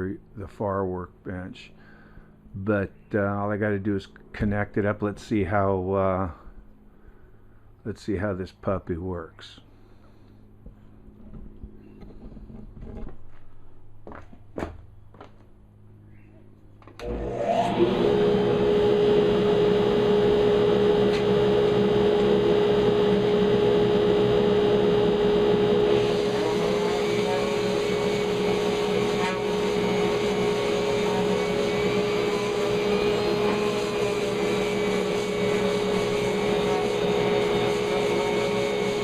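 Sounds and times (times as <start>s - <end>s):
dust collector humming: 16.8s - 39.0s
high whine: 17.0s - 39.0s.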